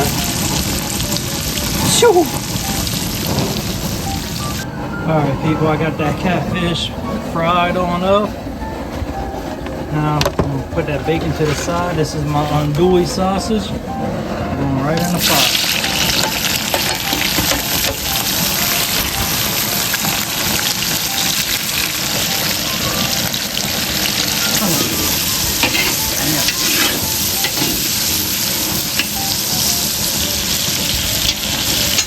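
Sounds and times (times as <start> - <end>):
sausage sizzling in fat: 0.0 - 4.6, 14.9 - 32.0.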